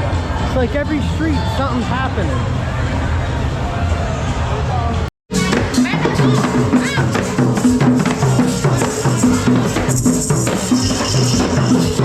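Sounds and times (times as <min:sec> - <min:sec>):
tambourine and shakers: 0:06.6 - 0:12.0.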